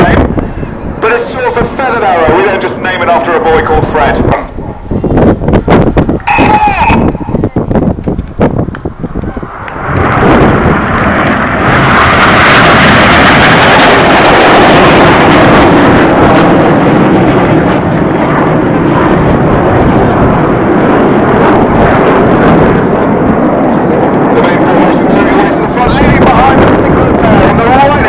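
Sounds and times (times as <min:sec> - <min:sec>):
jets flying past: 0:00.0 - 0:05.4, 0:08.4 - 0:28.0.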